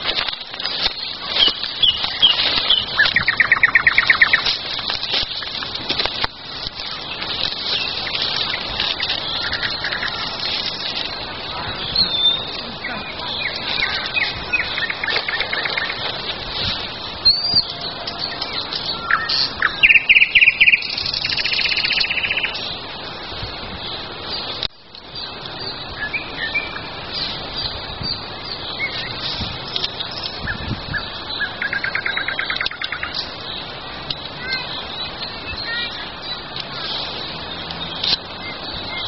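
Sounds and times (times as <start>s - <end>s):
bird rattling trills: 0.0s - 22.7s
songbirds singing: 0.0s - 39.0s.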